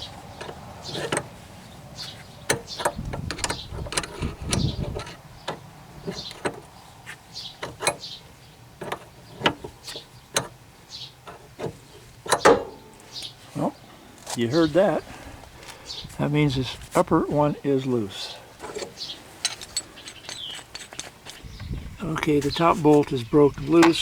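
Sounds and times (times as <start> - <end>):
metal tool clicking and creaking: 2.5 - 6.6, 18.6 - 24.0.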